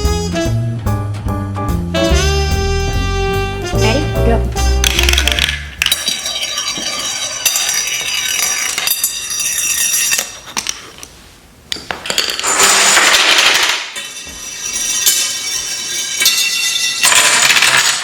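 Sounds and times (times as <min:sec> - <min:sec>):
marbles rolling and clattering: 0:04.8 - 0:11.1, 0:11.7 - 0:18.0
dense marble rattle: 0:04.8 - 0:18.0.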